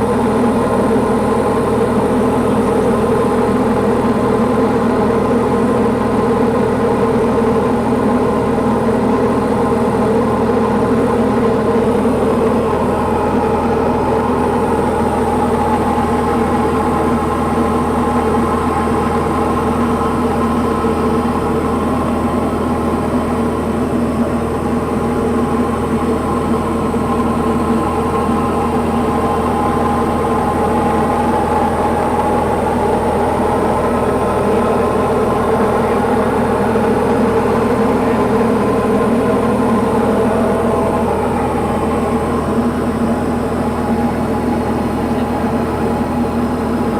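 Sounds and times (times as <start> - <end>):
aircraft engine and propeller drone: 0.0 - 46.9.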